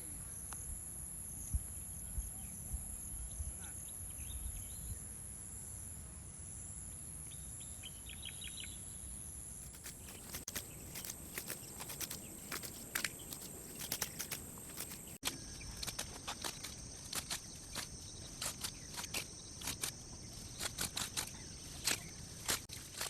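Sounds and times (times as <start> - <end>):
insects buzzing: 0.2 - 23.0
footsteps through dry grass: 9.6 - 15.2.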